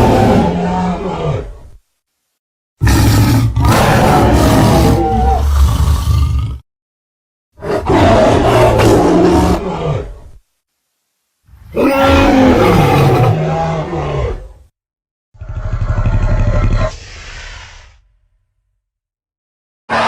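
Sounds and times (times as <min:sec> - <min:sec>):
deep dinosaur roars: 0:00.0 - 0:01.6, 0:02.8 - 0:06.6, 0:07.6 - 0:10.2, 0:11.7 - 0:14.6, 0:15.4 - 0:17.7.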